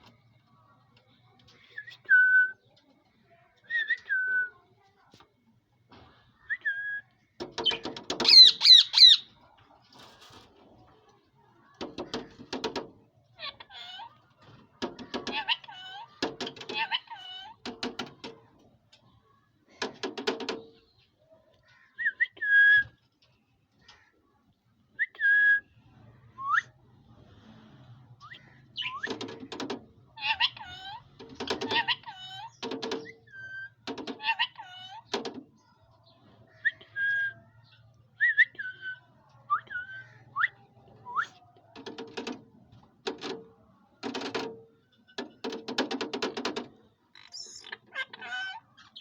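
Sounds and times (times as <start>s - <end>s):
parrot chattering: 7.6s - 9.3s, 30.2s - 35.1s, 47.2s - 48.8s
parrot chirps: 7.6s - 9.3s.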